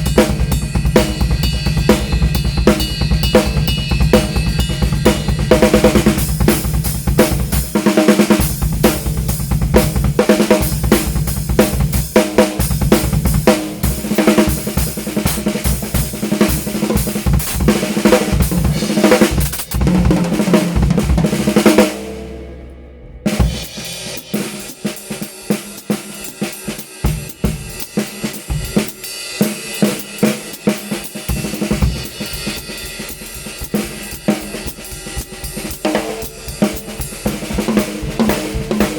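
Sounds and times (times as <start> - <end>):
wooden snare drum: 0.0 - 26.5, 29.8 - 38.9
drum kit groove: 0.0 - 38.9
drum ringing out: 0.0 - 38.9.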